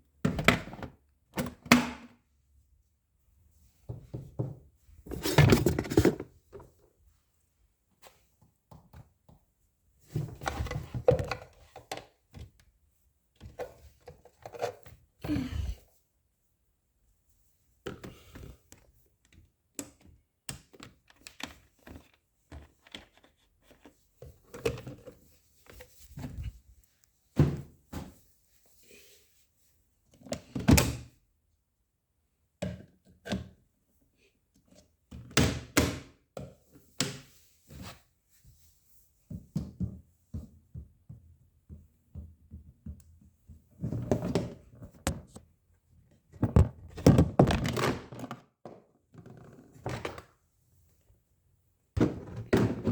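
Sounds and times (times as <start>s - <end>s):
thumps and knocks: 46.3s - 48.2s.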